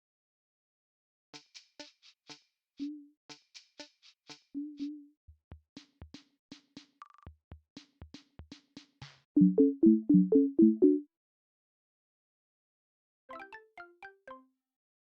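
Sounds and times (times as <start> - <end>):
bright two-note blips: 9.4 - 11.0.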